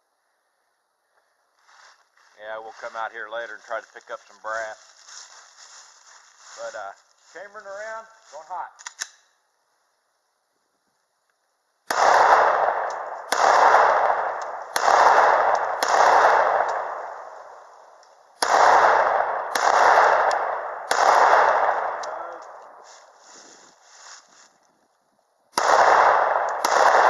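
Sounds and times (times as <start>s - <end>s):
pistol shots echoing: 11.9s - 22.8s, 25.5s - 27.0s.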